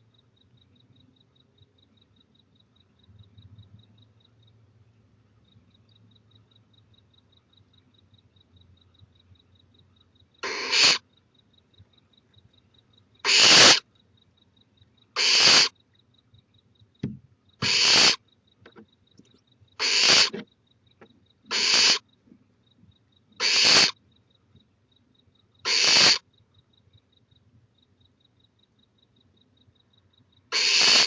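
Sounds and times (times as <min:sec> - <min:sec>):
owlet breathy hisses: 0:10.4 - 0:11.0, 0:13.3 - 0:13.8, 0:15.2 - 0:15.7, 0:17.6 - 0:18.2, 0:19.8 - 0:20.3, 0:21.5 - 0:22.0, 0:23.4 - 0:24.0, 0:25.7 - 0:26.2, 0:30.6 - 0:31.0.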